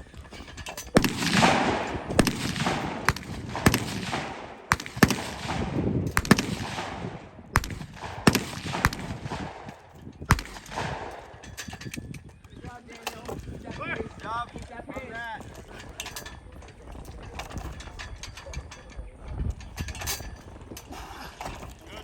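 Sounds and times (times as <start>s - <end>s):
gunshots echoing: 1.0s - 11.7s.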